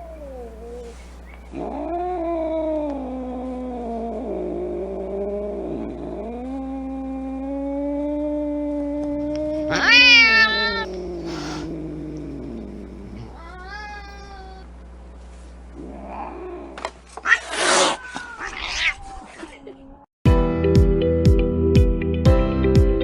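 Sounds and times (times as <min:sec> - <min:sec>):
cat yowling and growling: 0:00.0 - 0:14.7, 0:15.8 - 0:19.6
cat hissing: 0:09.1 - 0:14.7, 0:15.8 - 0:19.6
guitar music: 0:20.3 - 0:23.0.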